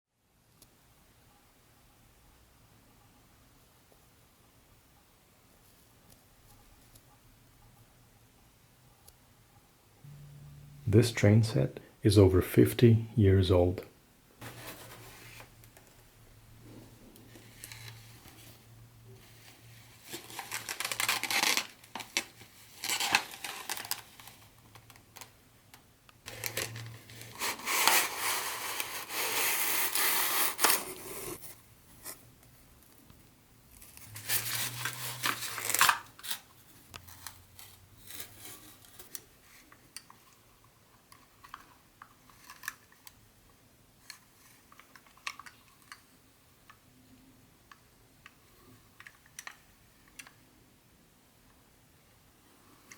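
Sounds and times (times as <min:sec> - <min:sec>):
packaging rustling and tearing: 0:19.3 - 0:25.3, 0:26.3 - 0:31.4, 0:33.8 - 0:39.2.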